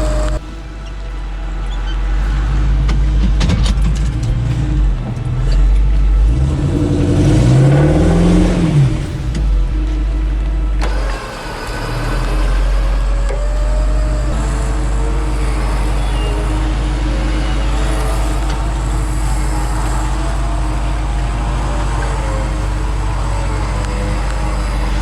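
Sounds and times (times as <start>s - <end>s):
vehicle engine humming: 0.0s - 25.0s.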